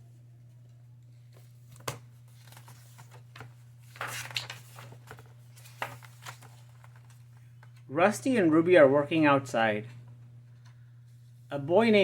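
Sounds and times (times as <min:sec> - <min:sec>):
steady low hum: 0:00.0 - 0:12.0
paper pages rustling: 0:01.1 - 0:07.8.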